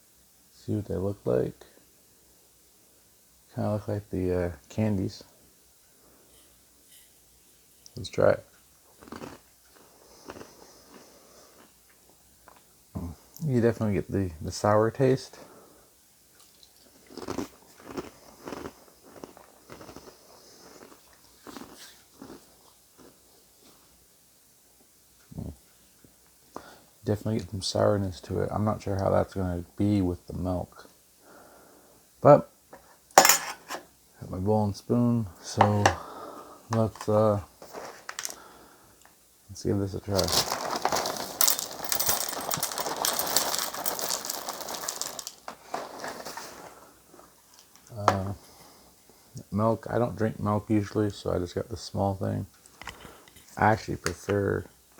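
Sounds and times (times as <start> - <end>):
person chewing crunchy cereal: 8.9 - 11.8, 16.4 - 23.3, 40.2 - 47.9
cereal pouring into a bowl: 40.2 - 46.9.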